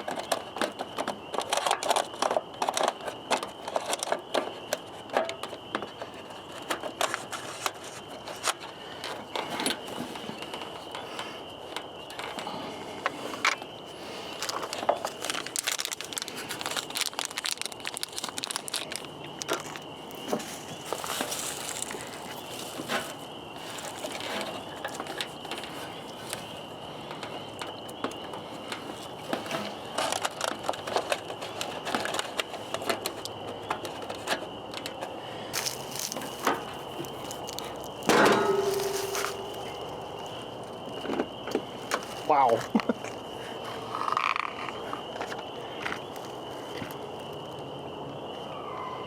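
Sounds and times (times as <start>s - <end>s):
hands clicking plastic parts: 0.0s - 5.9s
plastic parts clicking and crinkling: 0.0s - 13.7s, 14.3s - 43.2s.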